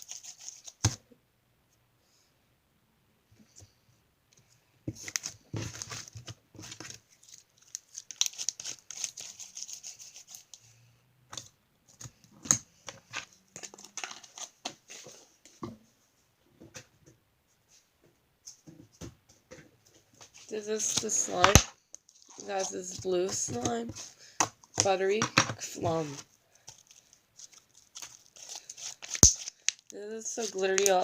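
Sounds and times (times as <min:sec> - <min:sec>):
slime clicking and crackling: 0:27.4 - 0:30.0.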